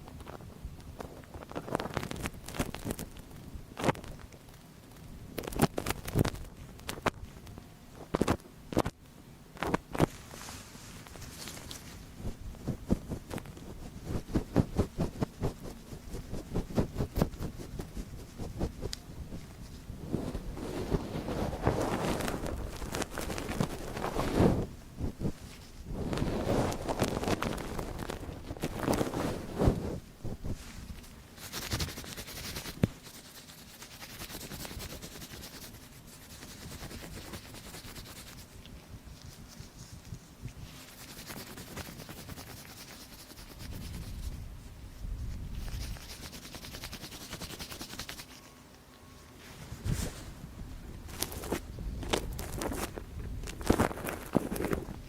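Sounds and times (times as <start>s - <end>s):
tool scratching on microphone: 10.4s - 19.0s, 19.6s - 30.6s, 31.4s - 38.5s, 40.8s - 44.4s.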